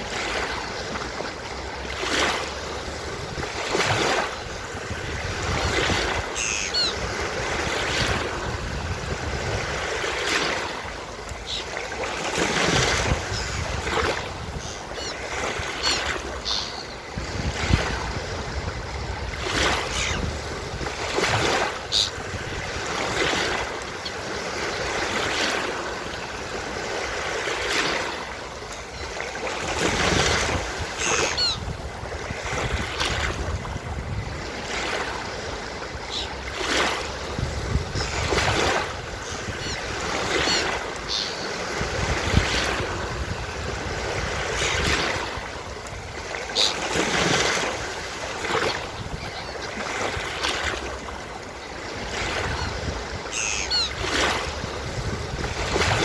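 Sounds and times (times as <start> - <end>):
ocean surf breaking on beach: 0.0 - 56.0
seagull calls: 6.1 - 7.4, 11.4 - 11.9, 14.5 - 17.1, 19.6 - 20.4, 21.4 - 22.2, 30.9 - 31.7, 36.0 - 36.4, 37.9 - 41.8, 46.4 - 47.0, 48.6 - 49.9, 52.3 - 54.4.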